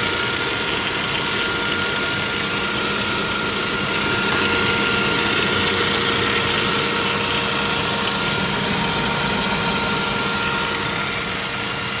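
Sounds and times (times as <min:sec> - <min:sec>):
constant whine: 0:00.6 - 0:12.0
car engine running: 0:03.9 - 0:11.6.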